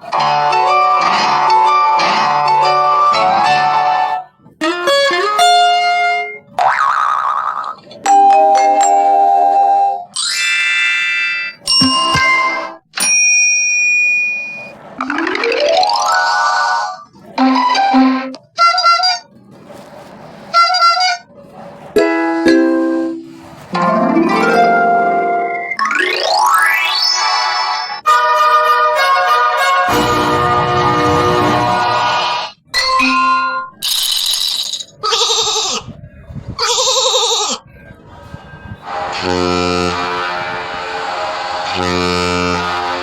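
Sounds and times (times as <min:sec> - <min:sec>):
phone ringtone tune: 0:11.3 - 0:13.4, 0:14.2 - 0:18.3, 0:22.0 - 0:27.0
phone chime: 0:11.6 - 0:14.7
rising run of notes: 0:15.0 - 0:17.0, 0:22.0 - 0:27.2.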